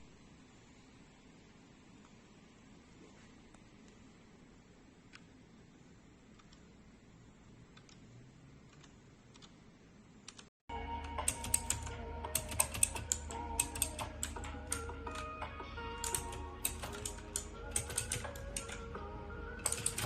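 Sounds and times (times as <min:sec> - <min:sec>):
background music: 0:10.7 - 0:20.0.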